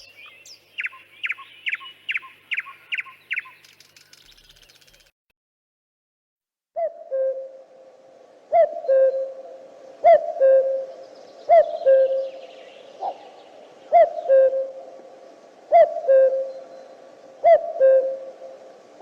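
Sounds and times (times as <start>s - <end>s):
bird hooting call: 6.8s - 18.8s.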